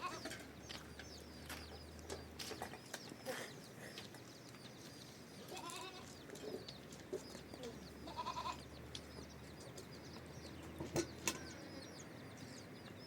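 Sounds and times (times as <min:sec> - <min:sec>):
small birds chirping: 0:00.0 - 0:13.0
goats bleating: 0:05.5 - 0:06.2, 0:08.0 - 0:08.6.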